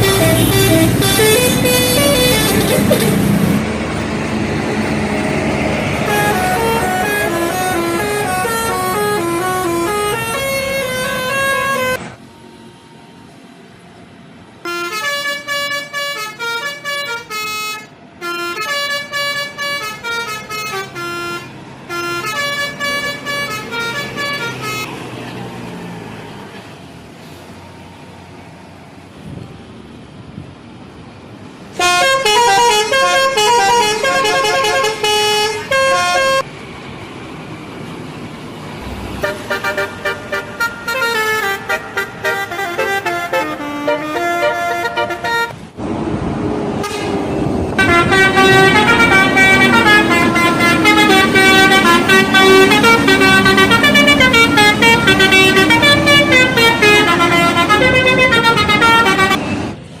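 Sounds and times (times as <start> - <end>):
multi-tone air horn melodies: 0.0 - 3.6, 5.8 - 12.0, 14.6 - 24.9, 31.8 - 36.5, 39.2 - 45.6, 46.8 - 47.2, 47.8 - 59.7.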